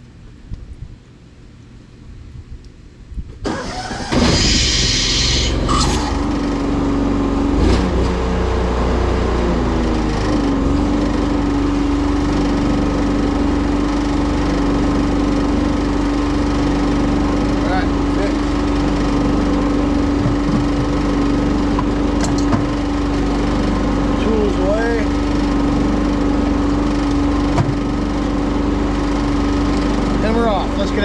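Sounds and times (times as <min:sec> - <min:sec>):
pressure washer engine running: 0:03.5 - 0:07.4, 0:08.2 - 0:31.0.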